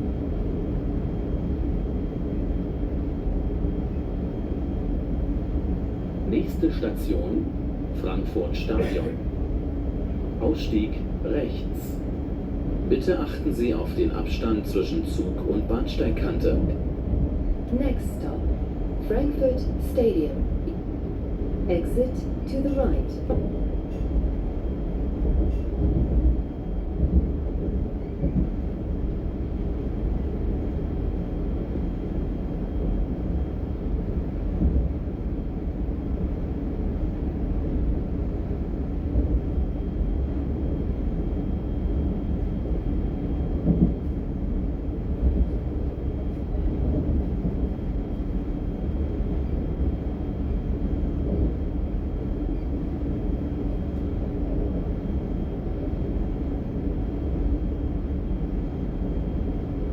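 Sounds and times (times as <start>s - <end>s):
train wheels rumbling: 0.0s - 59.9s
train knocks: 22.7s - 24.2s, 43.6s - 44.2s.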